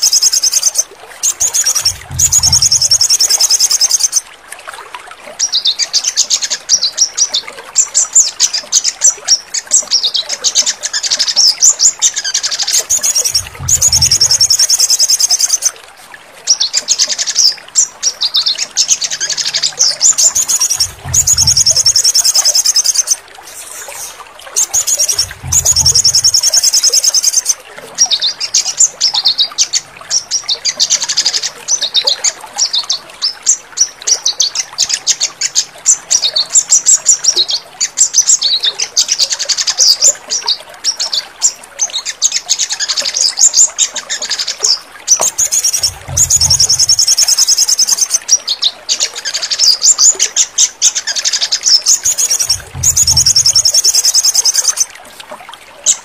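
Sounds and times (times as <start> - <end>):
bird chirping and trilling: 0.0 - 4.2, 7.8 - 15.7, 16.5 - 54.9
short low rumbles: 1.8 - 2.9, 13.4 - 14.4, 20.8 - 21.9, 25.2 - 26.3, 45.8 - 46.8, 52.5 - 53.5.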